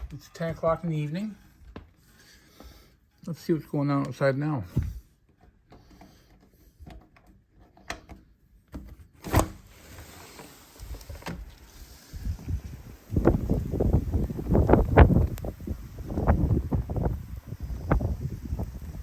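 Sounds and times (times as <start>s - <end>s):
blizzard hiss: 10.3s - 19.0s
wind gusts buffeting microphone: 12.1s - 19.0s.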